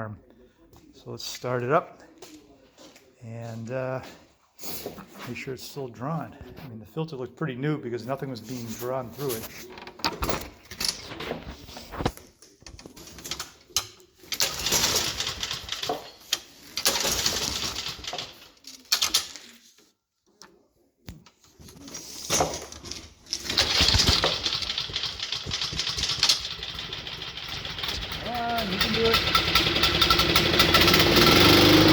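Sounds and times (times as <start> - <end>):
mower recoil starter pulls: 27.1 - 31.9.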